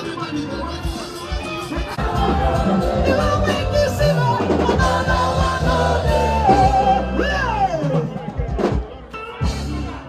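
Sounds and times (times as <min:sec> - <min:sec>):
bass and drum beat: 0:00.0 - 0:10.0
person singing: 0:02.0 - 0:08.2.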